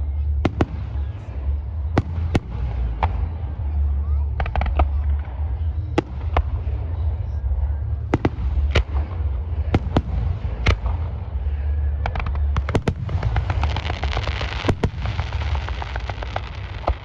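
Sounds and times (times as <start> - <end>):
low rumble: 0.0 - 17.0
fireworks crackling pops: 12.0 - 17.0
fireworks bangs: 12.1 - 17.0.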